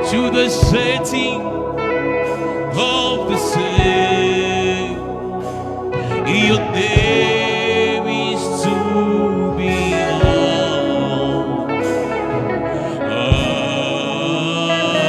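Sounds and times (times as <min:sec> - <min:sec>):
person singing with vibrato: 0:00.0 - 0:15.0
sustained chords: 0:00.0 - 0:15.0
deep drum hits: 0:00.6 - 0:01.1, 0:03.7 - 0:04.2, 0:06.8 - 0:07.6, 0:10.1 - 0:10.8, 0:13.3 - 0:13.8.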